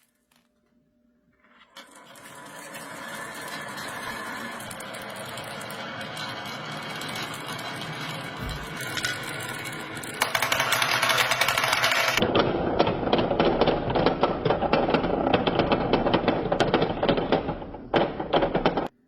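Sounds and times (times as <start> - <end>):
marbles rolling and clattering: 1.4 - 18.9
toy mechanism whirring: 1.8 - 12.2.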